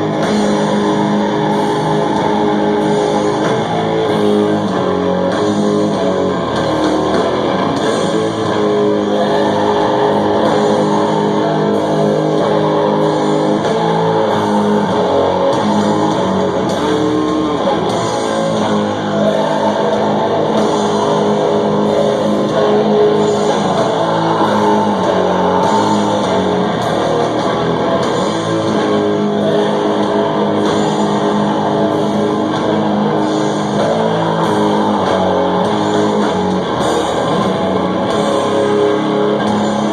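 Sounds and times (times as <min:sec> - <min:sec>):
heavy metal band playing: 0:00.0 - 0:39.9.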